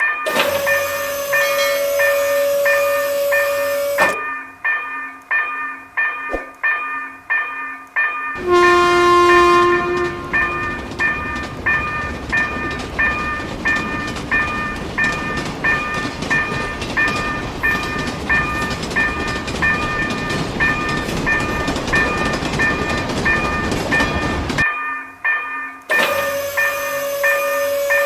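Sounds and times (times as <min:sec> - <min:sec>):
level-crossing warning bell: 0:00.0 - 0:28.0
passing train rumble: 0:00.3 - 0:04.2, 0:08.4 - 0:24.6.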